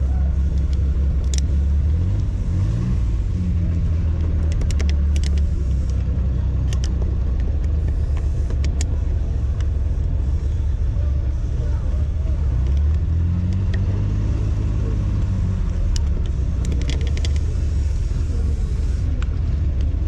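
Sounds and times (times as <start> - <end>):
car engine idling: 0.0 - 20.0
light metallic clicks: 4.0 - 9.8.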